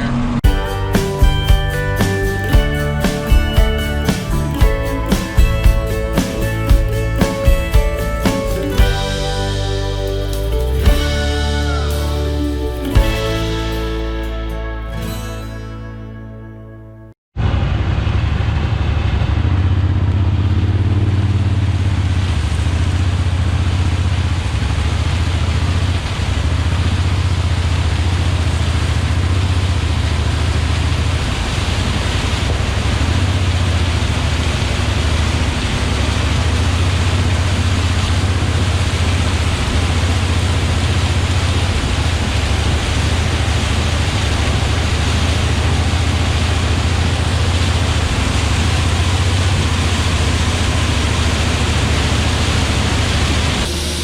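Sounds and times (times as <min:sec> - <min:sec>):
diesel engine drone: 0:00.0 - 0:16.2, 0:17.4 - 0:54.0
loud rushing noise: 0:31.3 - 0:54.0.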